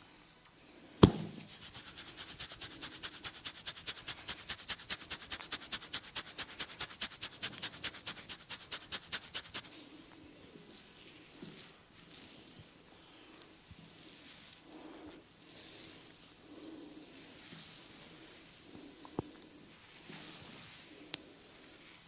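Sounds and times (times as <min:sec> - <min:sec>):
sharp slap: 0:01.0 - 0:01.8
hands tapping on head: 0:01.0 - 0:04.2.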